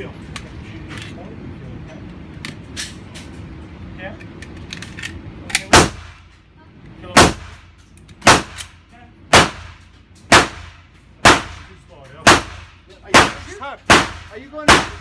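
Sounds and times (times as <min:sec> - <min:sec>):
pistol gunshots with echo: 0:05.7 - 0:06.2, 0:07.2 - 0:07.6, 0:08.2 - 0:08.7, 0:09.3 - 0:15.0.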